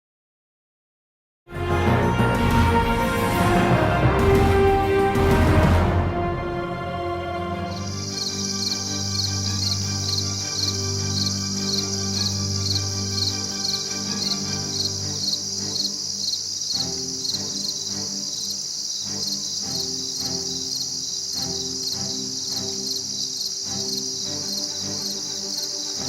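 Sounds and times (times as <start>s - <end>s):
music with sustained notes: 1.5s - 26.0s
crickets chirping: 6.9s - 26.0s.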